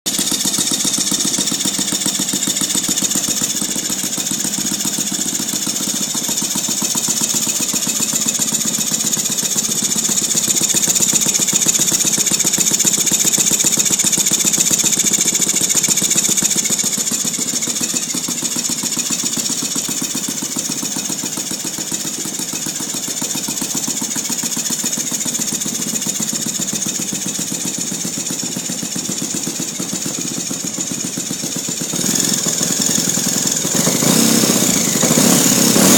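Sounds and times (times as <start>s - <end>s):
model aircraft engine running: 0.1s - 19.0s.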